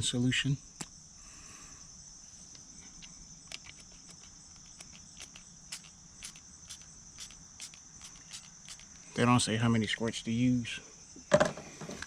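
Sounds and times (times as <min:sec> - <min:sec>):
high-pitched insect chirring: 0:02.1 - 0:10.8.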